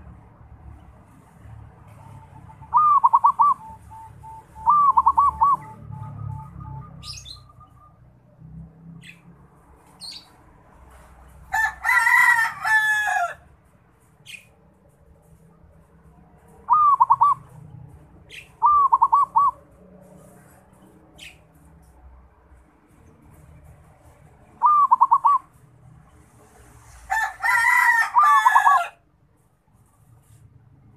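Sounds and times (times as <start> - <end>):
dove cooing rolling notes: 2.0 - 6.9, 16.7 - 17.5, 18.6 - 19.6, 24.6 - 25.5
rooster crowing: 11.4 - 13.5, 27.1 - 29.1.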